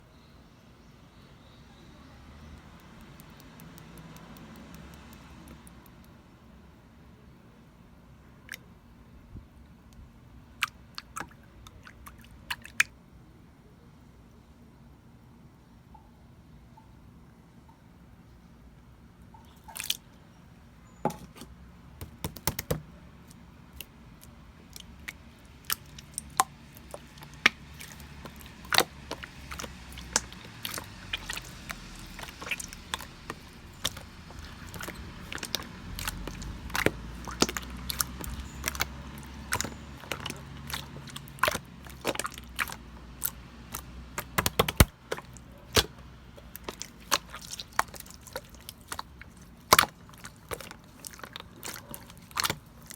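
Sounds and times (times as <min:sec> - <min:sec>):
slime squeezed clicking and popping: 0:02.6 - 0:06.1, 0:22.0 - 0:22.8, 0:24.8 - 0:52.9.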